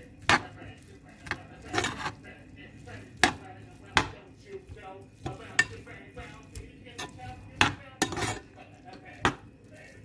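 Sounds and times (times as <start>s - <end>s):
kitchen utensils knocking: 7.0s - 9.4s.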